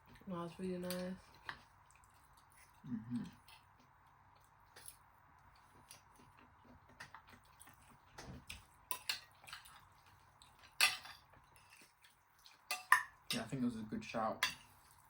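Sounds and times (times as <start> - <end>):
cutlery clinking against dishes: 8.3 - 9.7, 10.8 - 11.8, 12.7 - 13.5, 14.4 - 14.8.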